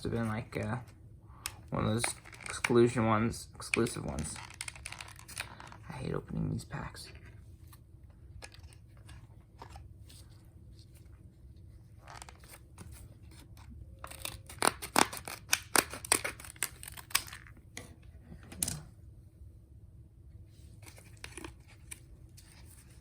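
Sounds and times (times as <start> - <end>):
plastic packaging snapping: 14.0 - 17.5.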